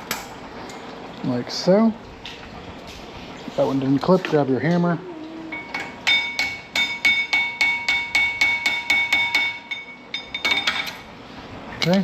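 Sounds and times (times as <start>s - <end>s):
hammer tapping on metal: 5.5s - 11.0s.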